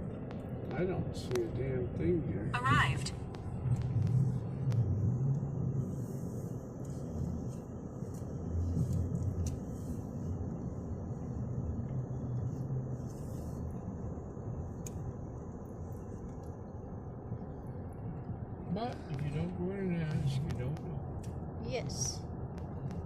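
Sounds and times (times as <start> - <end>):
car engine rumble: 0.0 - 23.0
road noise: 0.0 - 23.0.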